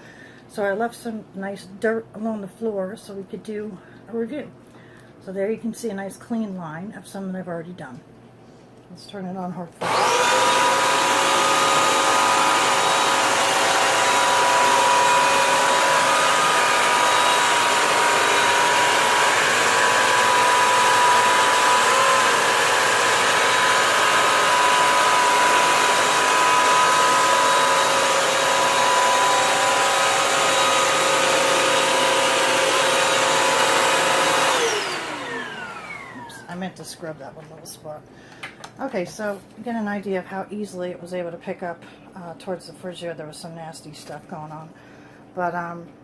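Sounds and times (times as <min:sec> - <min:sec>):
floor cleaner motor whine: 0:09.8 - 0:36.6.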